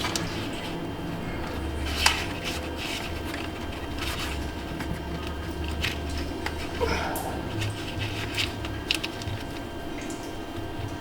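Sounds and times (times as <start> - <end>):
steady low hum: 0.0 - 11.0
plastic connectors clicking and scraping: 1.4 - 10.1.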